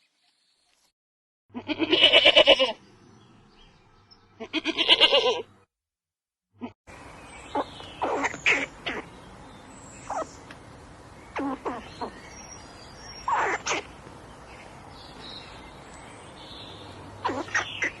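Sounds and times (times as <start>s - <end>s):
wavering bleat: 1.5s - 2.8s, 4.4s - 5.5s.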